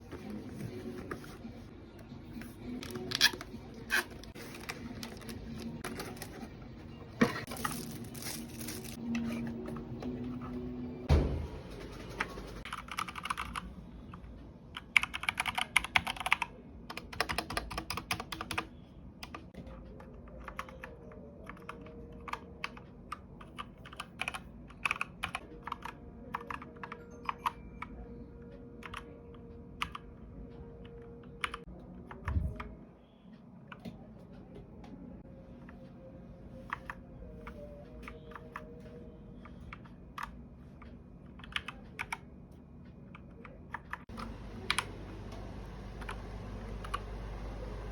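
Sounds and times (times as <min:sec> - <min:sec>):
heavier keyboard thump: 0:11.1 - 0:11.8
mechanical keyboard typing: 0:11.8 - 0:13.7, 0:14.8 - 0:27.6, 0:28.8 - 0:29.1, 0:31.2 - 0:32.3, 0:41.3 - 0:42.2.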